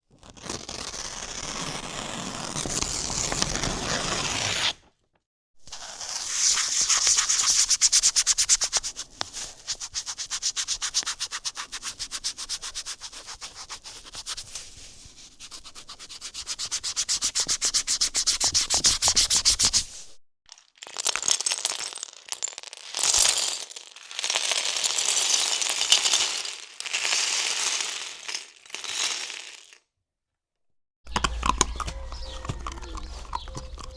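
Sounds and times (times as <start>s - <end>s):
plastic bricks poured and dropped: 20.8s - 24.8s.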